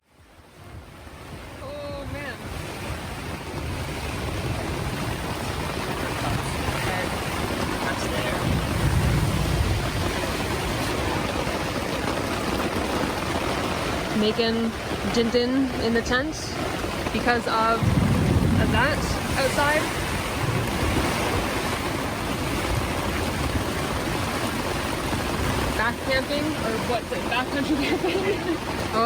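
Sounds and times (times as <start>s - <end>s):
wind gust buffeting microphone: 0.5s - 29.0s
strong wind rushing: 0.6s - 29.0s.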